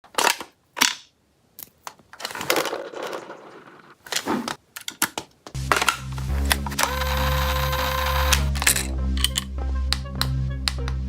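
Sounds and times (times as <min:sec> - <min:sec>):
music: 0:05.6 - 0:11.0
whirring: 0:06.7 - 0:08.6.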